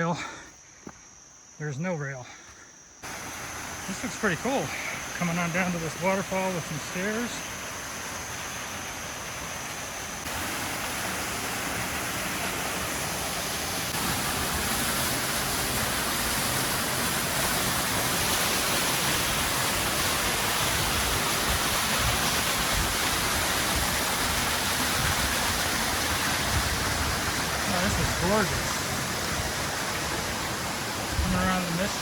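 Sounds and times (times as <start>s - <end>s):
waterfall rushing: 3.0s - 32.0s.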